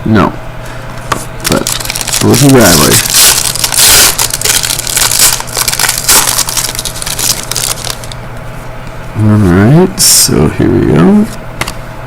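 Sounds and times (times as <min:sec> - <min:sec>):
foil wrapper crinkling: 0:01.4 - 0:08.2.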